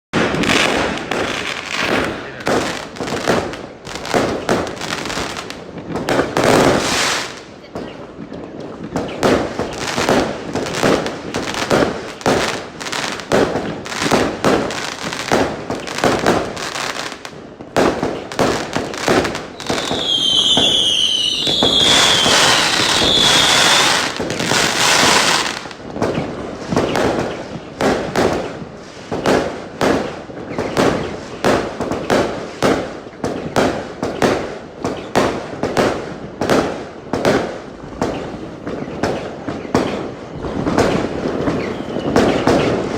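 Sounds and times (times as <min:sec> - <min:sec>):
fireworks bangs and crackles: 0:00.2 - 0:42.9
falling firework whistles: 0:19.0 - 0:29.4, 0:37.9 - 0:42.9.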